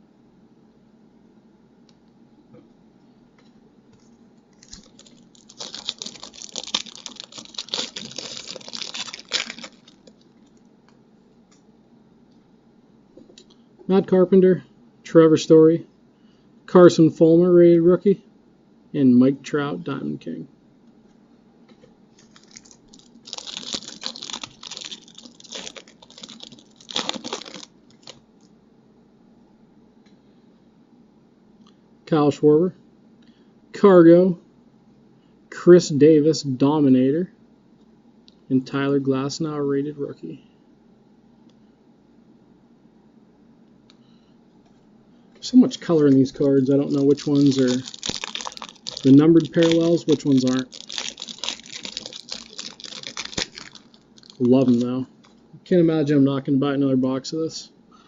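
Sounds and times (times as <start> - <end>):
foil wrapper crinkling: 4.0 - 10.6, 22.1 - 28.2, 45.6 - 55.4.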